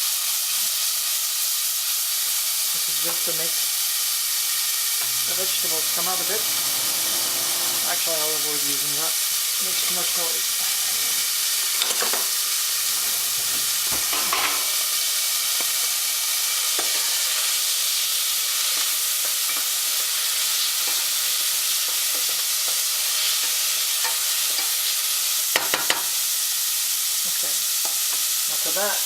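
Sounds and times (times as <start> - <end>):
vegetables sizzling in a pan: 0.0 - 29.0
utensil knocking: 12.8 - 14.8.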